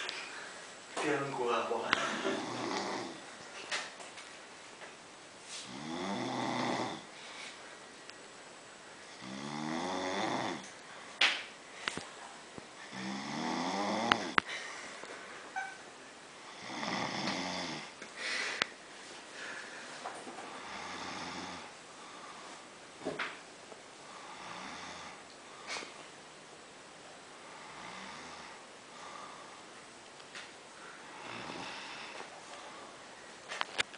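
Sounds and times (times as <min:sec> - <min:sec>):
person snoring: 0:01.9 - 0:03.3, 0:05.6 - 0:07.2, 0:09.1 - 0:10.7, 0:12.8 - 0:14.4, 0:16.4 - 0:18.4, 0:20.5 - 0:22.4, 0:24.1 - 0:25.8, 0:27.4 - 0:29.6, 0:31.0 - 0:32.8.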